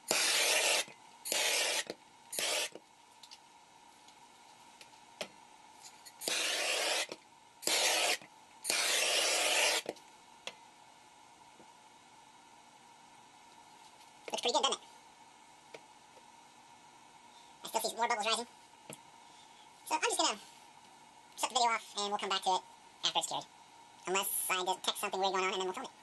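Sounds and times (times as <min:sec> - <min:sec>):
gas torch hissing: 0:00.0 - 0:02.8, 0:06.2 - 0:09.9.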